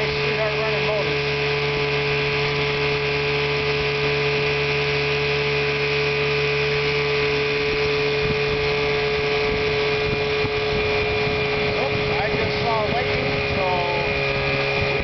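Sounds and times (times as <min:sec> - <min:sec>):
outboard motor running: 0:00.0 - 0:15.0.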